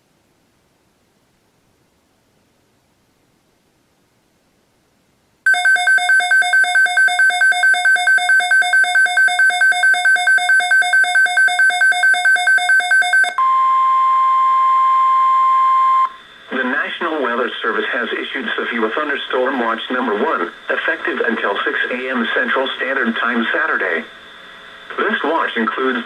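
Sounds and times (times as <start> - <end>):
rapid alarm beeping: 5.5 - 16.2
steady warning alarm tone: 5.5 - 16.3.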